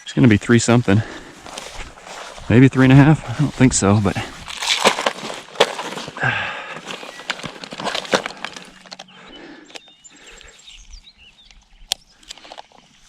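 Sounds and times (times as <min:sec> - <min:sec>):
fish handling clicks and rustling: 0:01.0 - 0:10.0, 0:11.6 - 0:12.9.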